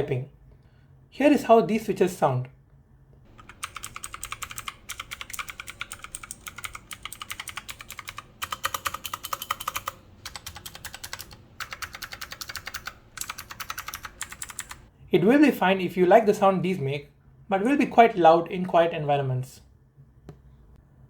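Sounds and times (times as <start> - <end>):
mechanical keyboard typing: 3.3 - 14.9.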